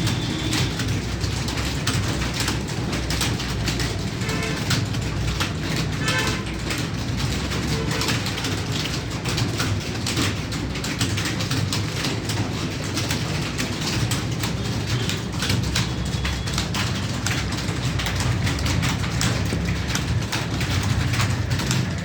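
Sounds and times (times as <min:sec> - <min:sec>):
computer keyboard typing: 0:00.0 - 0:22.0.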